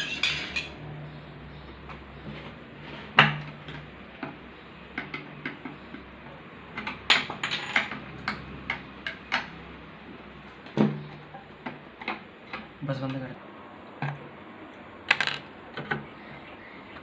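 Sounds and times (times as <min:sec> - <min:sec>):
metal parts and tools clinking: 0:00.0 - 0:00.8, 0:07.1 - 0:08.0.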